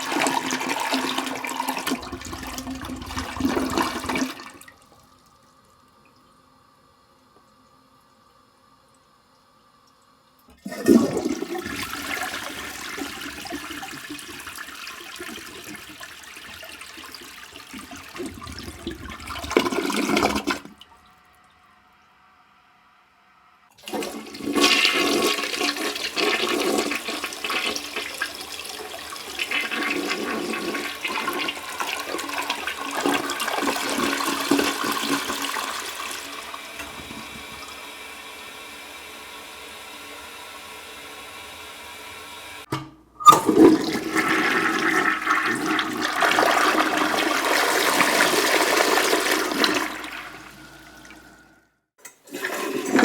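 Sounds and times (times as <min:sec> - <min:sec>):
toilet flushing: 0:00.0 - 0:06.0, 0:10.5 - 0:22.0, 0:23.7 - 0:53.0.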